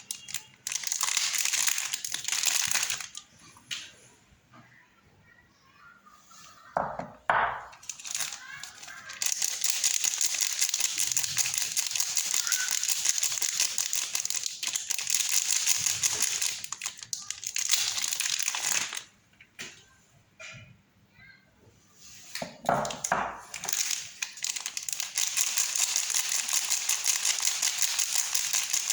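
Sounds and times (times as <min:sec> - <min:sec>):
wrapper crinkling: 0:00.0 - 0:03.3, 0:07.6 - 0:19.1, 0:22.8 - 0:28.9.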